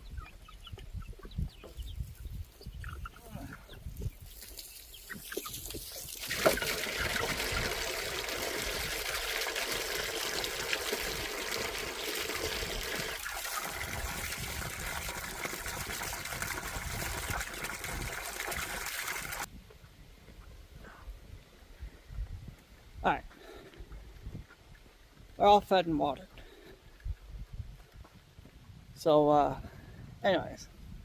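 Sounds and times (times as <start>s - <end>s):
water pouring into container: 5.4s - 19.5s.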